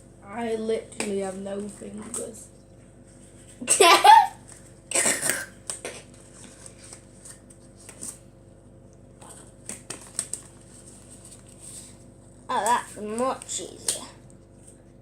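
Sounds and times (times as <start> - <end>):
plastic gloves rustling and crinkling: 9.3 - 15.0.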